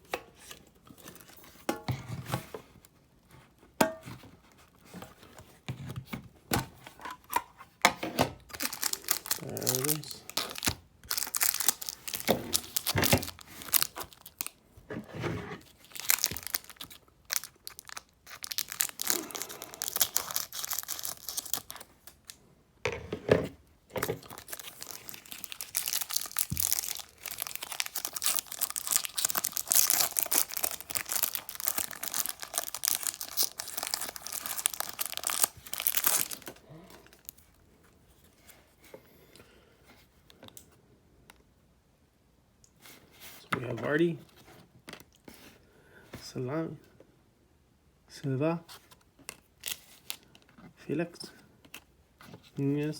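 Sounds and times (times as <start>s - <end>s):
wrapping torn and crinkled: 8.5s - 14.6s, 15.7s - 22.4s, 24.0s - 37.6s, 48.9s - 50.3s.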